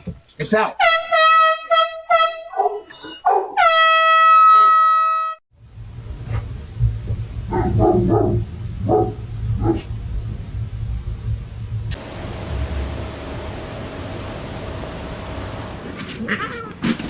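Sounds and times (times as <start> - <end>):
horn tooting: 0.8 - 2.8, 3.6 - 5.4
dog barking: 2.5 - 3.6, 7.5 - 9.9
low steady rumble: 5.6 - 16.0.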